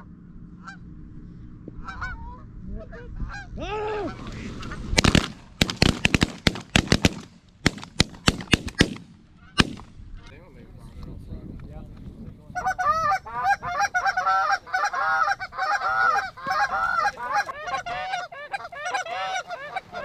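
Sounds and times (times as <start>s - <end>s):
geese honking: 0.6s - 0.9s, 1.8s - 3.5s, 9.4s - 9.6s, 12.6s - 20.0s
shotgun shots: 5.0s - 10.0s.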